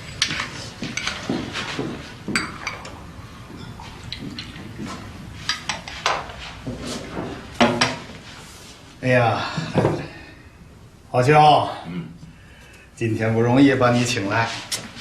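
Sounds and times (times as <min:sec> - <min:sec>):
teacups and dishes clinking: 0:02.2 - 0:06.4.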